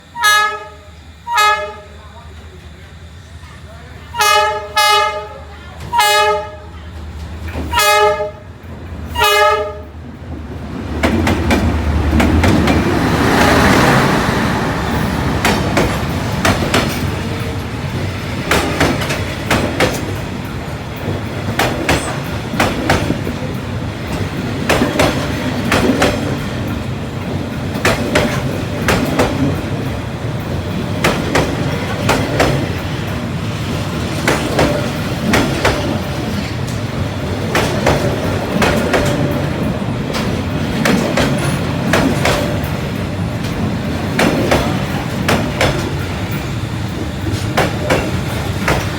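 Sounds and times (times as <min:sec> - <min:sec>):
train horn blasts: 0:00.0 - 0:02.1, 0:04.1 - 0:06.9, 0:07.6 - 0:08.5, 0:09.1 - 0:10.0
train cars rumbling: 0:00.0 - 0:48.9
wheels clacking over rail joints: 0:06.8 - 0:48.9.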